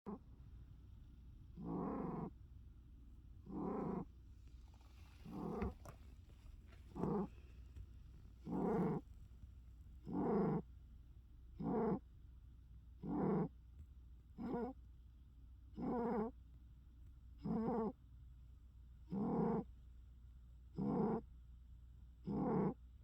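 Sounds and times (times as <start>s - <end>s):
cat snoring: 1.6s - 2.3s, 3.4s - 6.0s, 6.9s - 7.5s, 8.4s - 9.0s, 10.1s - 10.6s, 15.8s - 16.3s, 17.4s - 18.0s, 19.1s - 19.6s, 20.8s - 21.2s, 22.3s - 22.8s.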